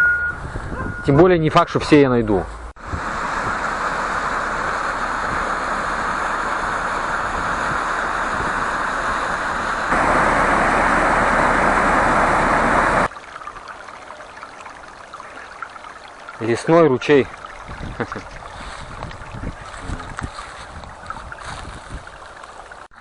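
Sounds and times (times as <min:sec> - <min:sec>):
steady rushing noise: 0:02.7 - 0:13.1
forest stream rushing: 0:02.8 - 0:23.0.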